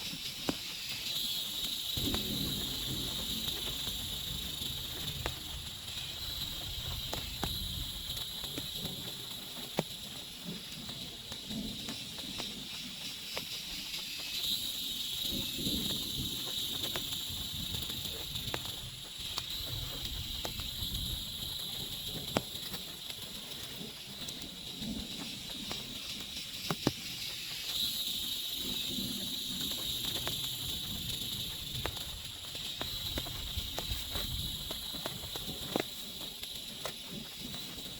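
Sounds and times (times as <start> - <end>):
high insect drone: 0.0 - 37.9.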